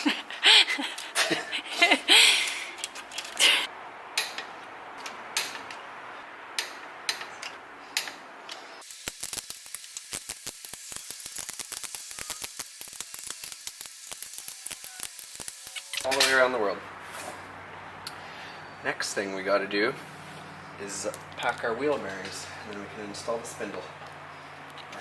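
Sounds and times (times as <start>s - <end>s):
ratchet wrench clicking: 8.8s - 16.0s.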